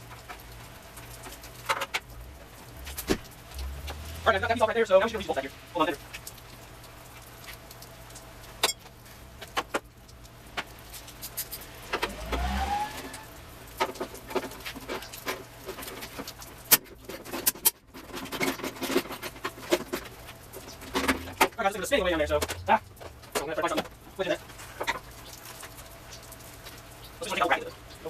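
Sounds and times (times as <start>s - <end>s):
short rising squeal: 11.6s - 13.4s.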